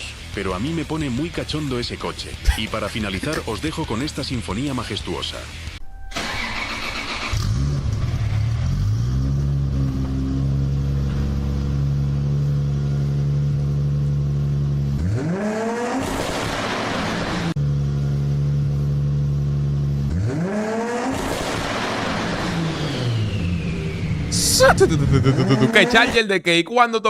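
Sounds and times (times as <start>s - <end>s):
car engine idling and revving: 5.5s - 26.2s.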